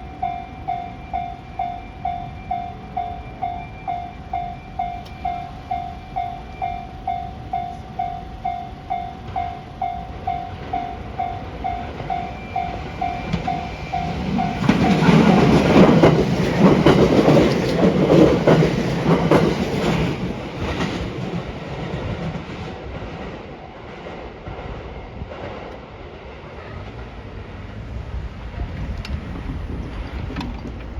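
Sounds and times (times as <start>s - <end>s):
level crossing warning bell: 0.0s - 20.8s
electric train passing: 0.0s - 30.9s
wheels clicking over rail joints: 9.2s - 24.6s, 28.4s - 30.9s.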